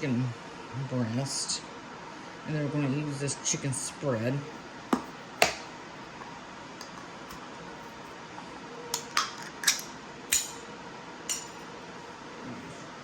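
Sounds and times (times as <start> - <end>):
kitchen items clinking: 9.0 - 10.6, 11.3 - 11.7.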